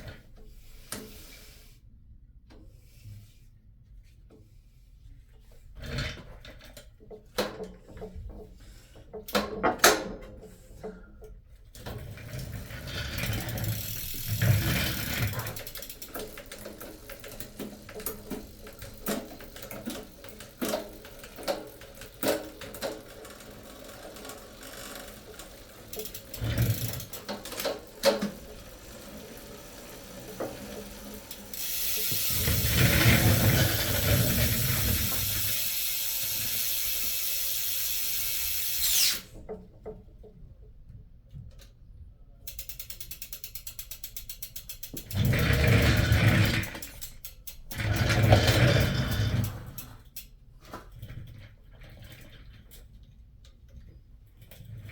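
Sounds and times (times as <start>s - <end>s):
mechanical ratcheting clicks: 13.1s - 39.4s, 42.5s - 48.3s
loud whirring: 28.4s - 36.5s.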